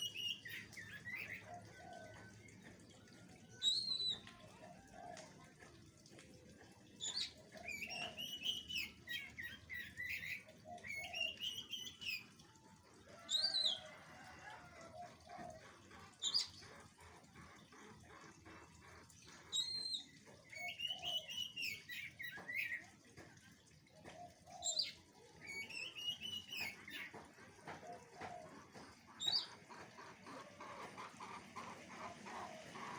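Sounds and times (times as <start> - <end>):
faint rapid clicks: 2.1 - 8.1.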